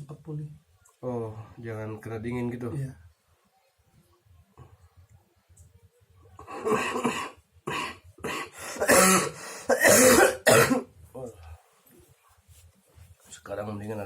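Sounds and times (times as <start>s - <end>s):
man coughing: 6.6s - 10.9s.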